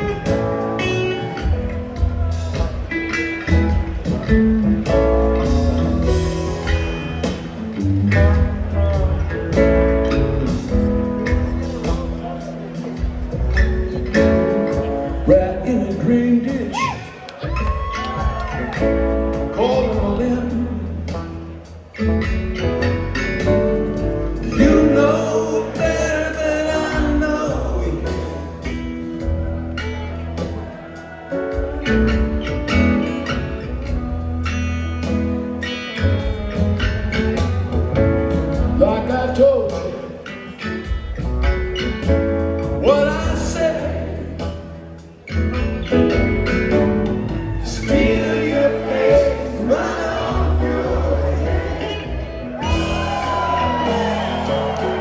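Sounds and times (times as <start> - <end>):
rock band playing: 0.0 - 55.0
man singing: 15.1 - 17.2, 19.4 - 21.2, 24.3 - 28.7, 38.7 - 40.3, 42.7 - 44.6, 47.6 - 55.0
sliding pitched guitar line: 45.2 - 55.0.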